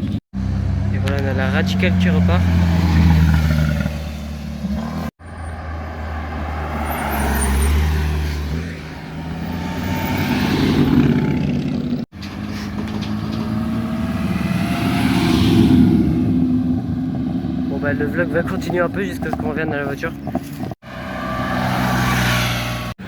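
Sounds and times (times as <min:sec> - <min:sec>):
sports cars accelerating past: 0:12.4 - 0:17.8, 0:20.9 - 0:23.0.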